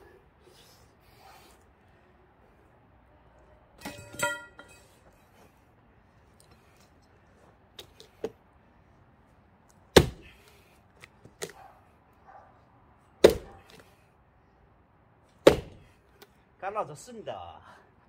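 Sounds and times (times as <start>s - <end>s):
axe chopping log: 9.9s - 10.6s, 13.2s - 13.8s, 15.4s - 15.9s.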